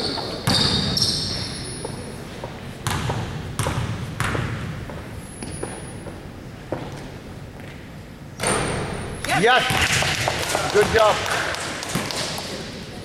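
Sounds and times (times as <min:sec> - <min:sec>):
sneaker squeaks: 0:00.0 - 0:06.4
basketball bouncing on gym floor: 0:00.4 - 0:01.4, 0:02.8 - 0:06.9, 0:08.4 - 0:12.5.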